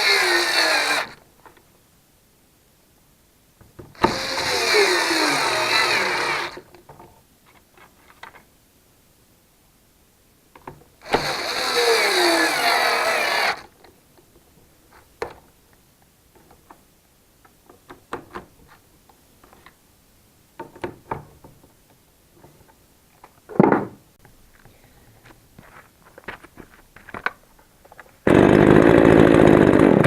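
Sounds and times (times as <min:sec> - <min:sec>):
chainsaw engine running: 0:00.0 - 0:01.2, 0:04.0 - 0:06.6, 0:11.1 - 0:13.6, 0:28.3 - 0:30.0.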